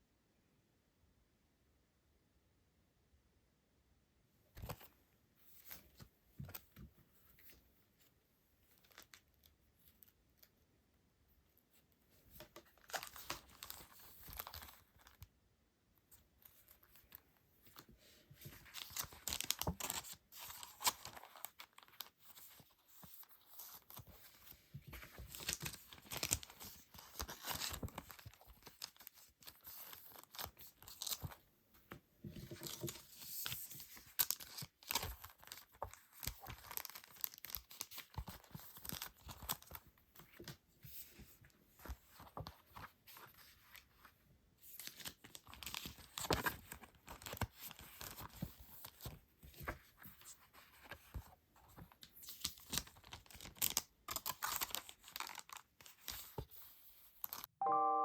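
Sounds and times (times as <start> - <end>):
packaging crinkling and tearing: 25.1 - 31.4, 32.6 - 39.8, 51.8 - 56.6.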